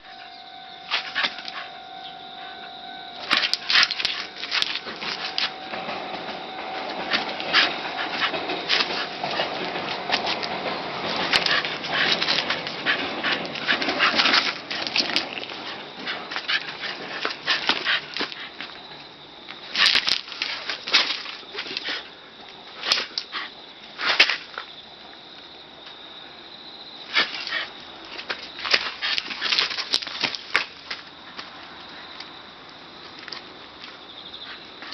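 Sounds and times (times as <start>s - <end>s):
faint steady tone: 0.0s - 19.7s
dog scuffling and clicking: 0.9s - 1.7s, 3.2s - 18.7s, 19.8s - 22.0s, 27.1s - 31.5s.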